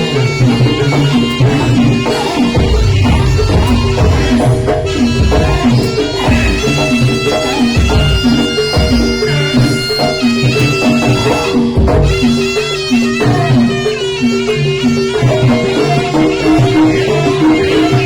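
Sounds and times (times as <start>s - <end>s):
shrill reed-trumpet melody: 0.0s - 18.0s
hand-drum strokes: 0.7s - 18.0s
gong-chime notes: 2.7s - 8.4s.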